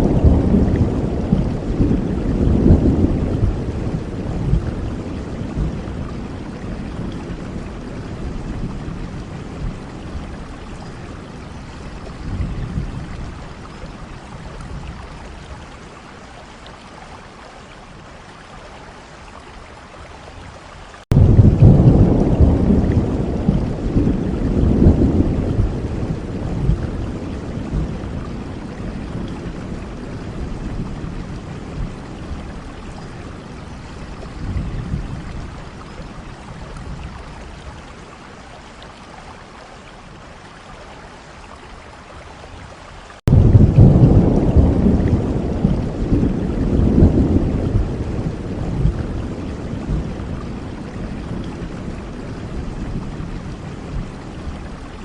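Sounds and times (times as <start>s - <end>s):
rolling thunder: 0.0s - 10.5s, 21.1s - 33.5s, 43.3s - 54.9s
steady rain: 0.0s - 55.0s.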